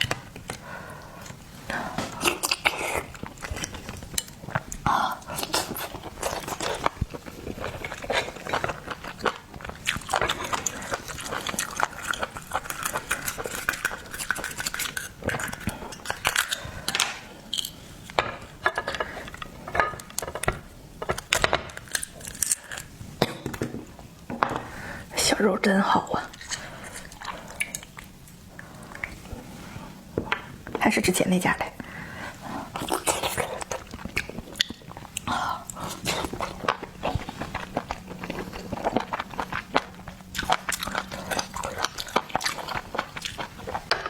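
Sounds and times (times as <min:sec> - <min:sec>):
biting and chewing: 0:00.0 - 0:17.8, 0:32.5 - 0:44.0.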